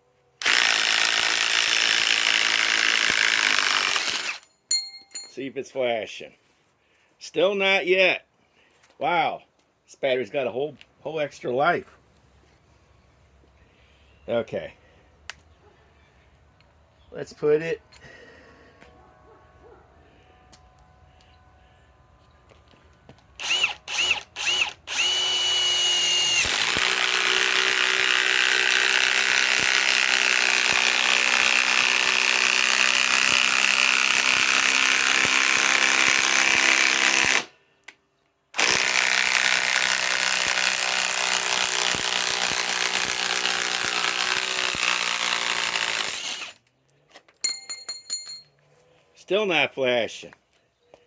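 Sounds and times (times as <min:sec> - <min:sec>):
impact wrench free-spinning whine: 0:23.4 - 0:32.2.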